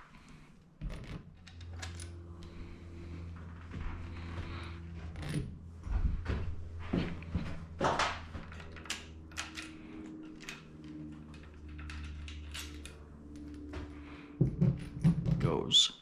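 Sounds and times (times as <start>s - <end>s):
steady low hum: 0.0s - 16.0s
metal parts clicking on workbench: 8.5s - 13.5s.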